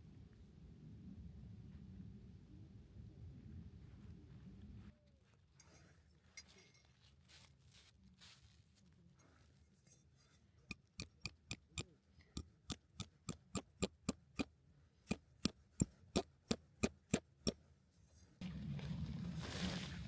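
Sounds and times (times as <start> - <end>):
rapid metallic tapping: 10.7 - 14.5, 15.1 - 17.6.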